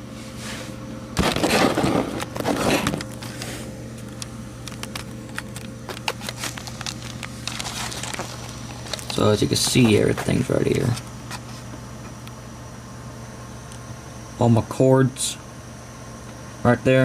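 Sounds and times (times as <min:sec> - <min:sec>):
steady low hum: 0:00.0 - 0:17.0
small clicks and crackles: 0:04.2 - 0:09.8
camera handling rustle: 0:04.6 - 0:09.2.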